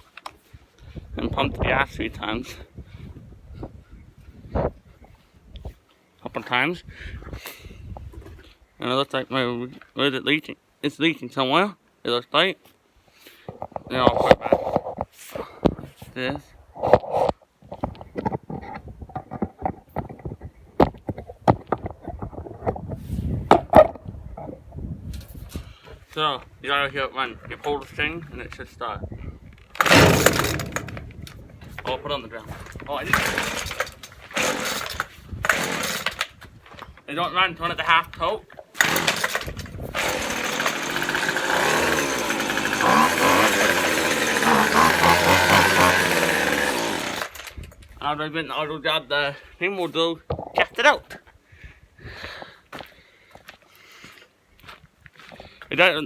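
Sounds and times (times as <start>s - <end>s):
wind buffeting microphone: 0.8s - 5.8s, 17.8s - 25.7s, 27.4s - 35.6s
handling knocks and clicks: 29.6s - 37.1s
string trimmer engine running: 29.8s - 32.0s, 32.6s - 36.3s, 38.8s - 47.6s.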